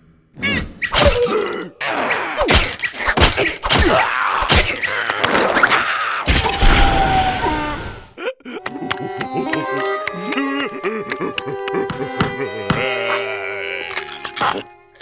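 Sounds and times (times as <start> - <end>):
cartoon groans and squeals: 0.4 - 14.5
comic thuds and whacks: 2.4 - 5.7, 6.3 - 7.2.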